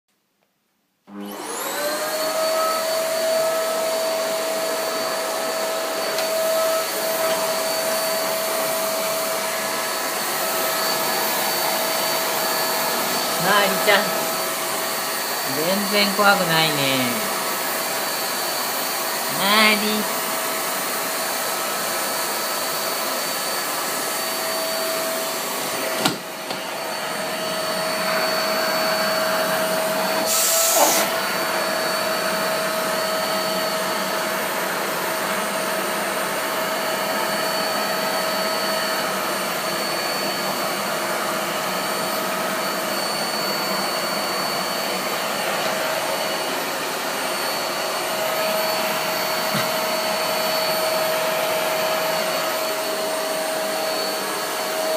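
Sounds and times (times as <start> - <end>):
vacuum cleaner whining: 1.0 - 54.9.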